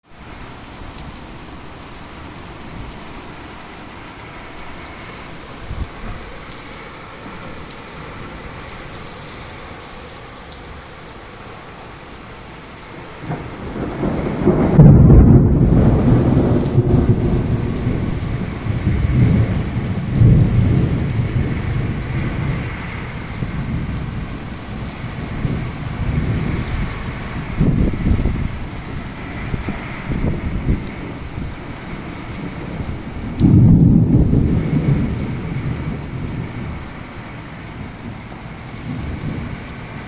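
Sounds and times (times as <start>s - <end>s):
steady rain: 0.0s - 40.0s
thunder rumbling: 13.1s - 40.0s.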